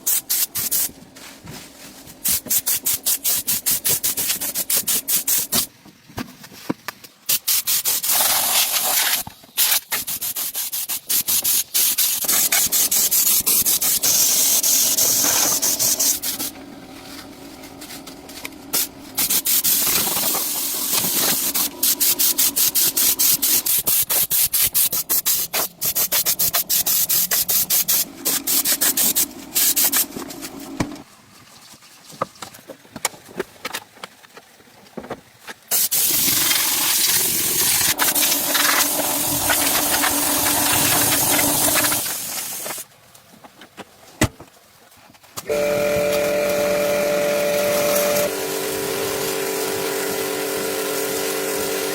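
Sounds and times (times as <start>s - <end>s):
sanding on an engine part: 7.3s - 17.2s, 18.8s - 30.3s, 35.7s - 42.8s, 45.5s - 51.9s.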